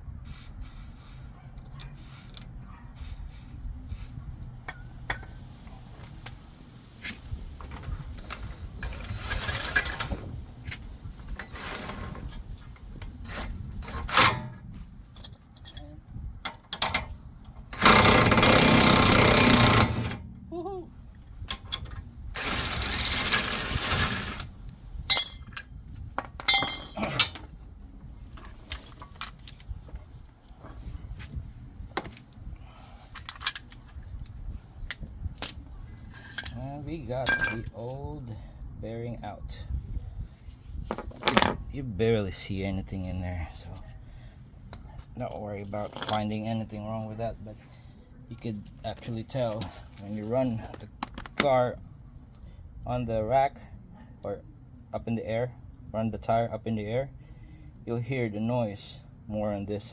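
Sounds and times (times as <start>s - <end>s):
metal tool clinks and knocks: 15.1s - 17.0s, 25.1s - 27.6s, 28.3s - 29.6s, 33.1s - 34.3s, 34.9s - 36.6s, 37.2s - 37.9s, 40.8s - 41.8s, 45.8s - 46.3s
impact wrench running: 17.8s - 20.2s, 22.4s - 24.4s.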